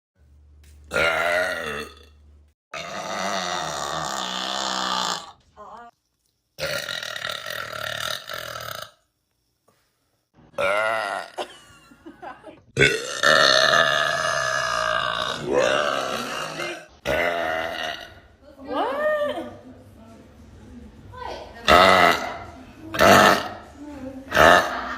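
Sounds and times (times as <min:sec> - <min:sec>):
person belching: 0:00.9 - 0:02.2, 0:02.8 - 0:05.4, 0:06.6 - 0:09.0, 0:10.6 - 0:11.5, 0:12.8 - 0:18.2, 0:21.6 - 0:23.6, 0:24.3 - 0:24.9.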